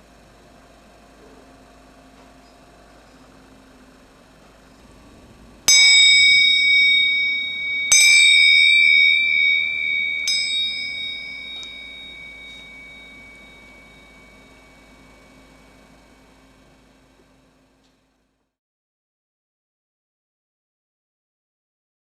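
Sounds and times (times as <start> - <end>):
small bell ringing: 5.7 - 16.6.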